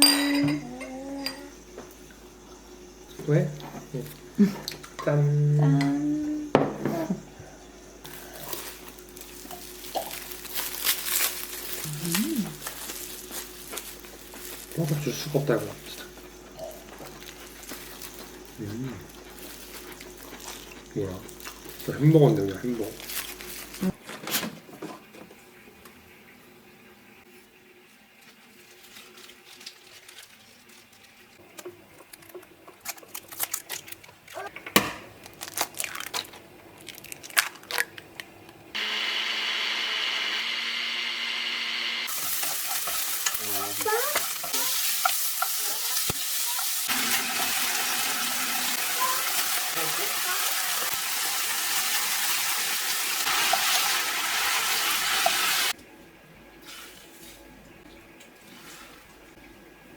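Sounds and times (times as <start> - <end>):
water running from a tap: 42.1 - 55.8.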